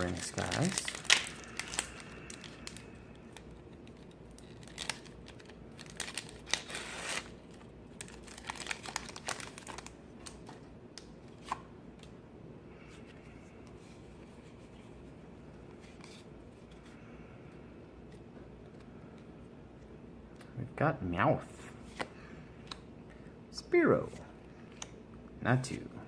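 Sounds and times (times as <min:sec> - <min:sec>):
foil wrapper crinkling and tearing: 0:00.0 - 0:10.4.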